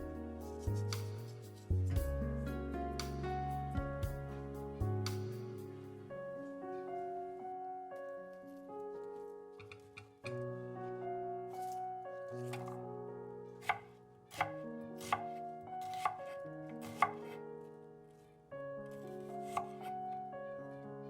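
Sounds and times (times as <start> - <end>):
soft background music: 0.0 - 21.0
knife chopping on cutting board: 13.6 - 17.4, 19.4 - 19.9.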